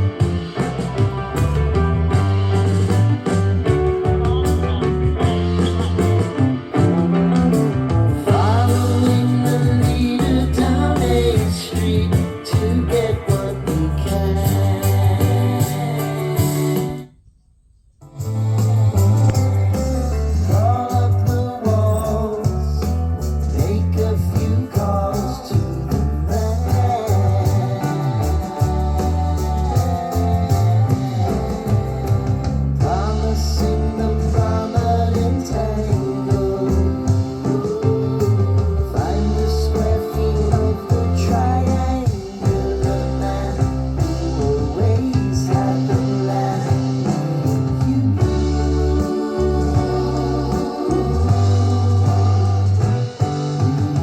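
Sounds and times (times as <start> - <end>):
blues-rock music through speaker: 0.0 - 17.1, 18.0 - 54.0.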